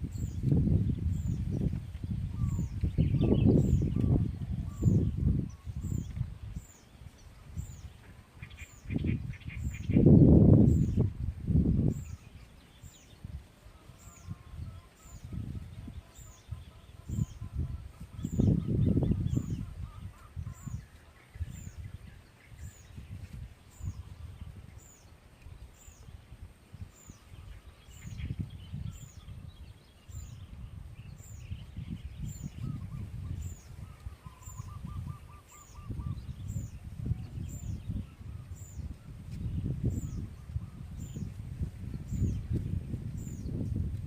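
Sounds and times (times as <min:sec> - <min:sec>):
wind gusting against microphone: 0:00.0 - 0:44.0.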